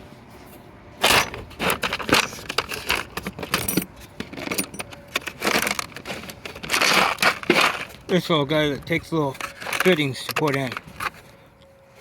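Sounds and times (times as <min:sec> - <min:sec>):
metal tools clattering: 0:01.0 - 0:08.0, 0:09.0 - 0:11.2.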